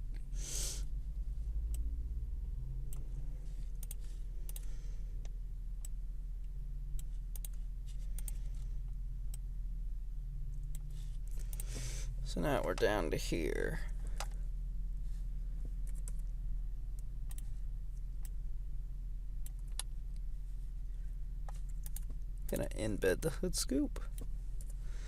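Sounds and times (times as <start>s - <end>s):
low electrical hum: 0.0s - 25.0s
keyboard and mouse clicks: 3.8s - 4.6s.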